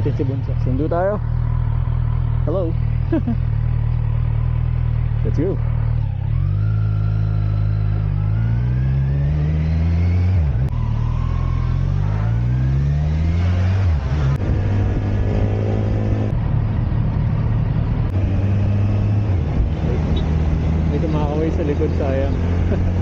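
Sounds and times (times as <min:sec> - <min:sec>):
motorcycle engine accelerating: 0:00.0 - 0:23.0.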